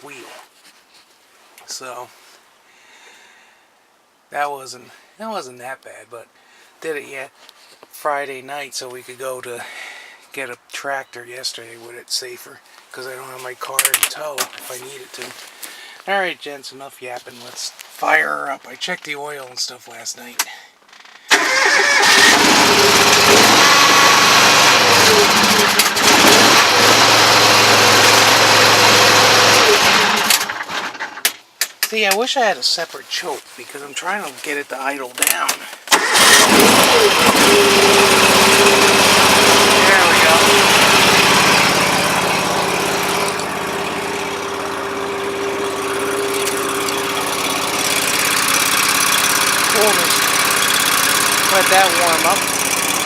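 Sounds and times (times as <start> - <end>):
tractor engine starting and running: 12.9 - 16.1, 20.9 - 32.2, 33.2 - 53.0.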